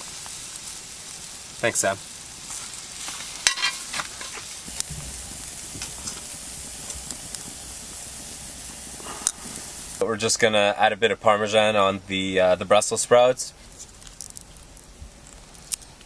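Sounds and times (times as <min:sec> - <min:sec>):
food sizzling in a frying pan: 0:00.0 - 0:10.7.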